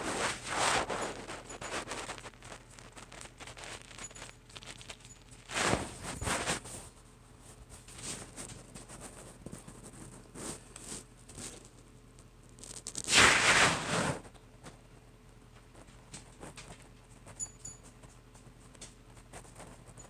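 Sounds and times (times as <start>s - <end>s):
cats' paws scrambling: 0.0s - 13.2s, 15.5s - 20.0s
rasping scratchy rush: 12.9s - 14.2s.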